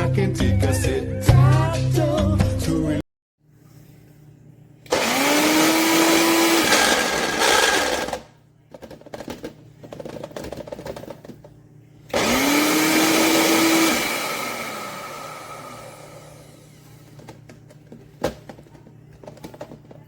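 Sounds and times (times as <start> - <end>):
blender motor whining: 4.9 - 8.3, 12.1 - 17.0.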